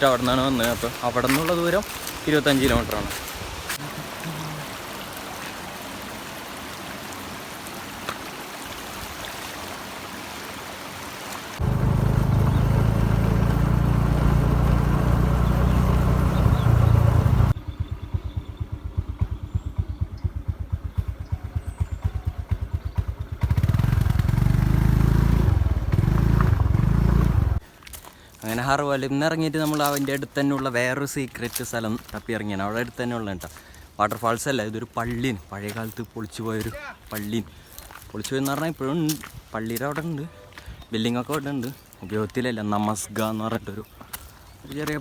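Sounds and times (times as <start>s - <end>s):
motorbike engine rumble: 11.6s - 27.6s.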